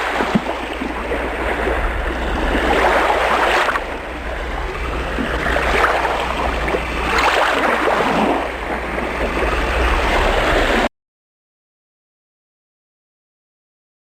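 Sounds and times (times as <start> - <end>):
low rumble: 0.0 - 10.9
ocean waves breaking: 0.0 - 10.9.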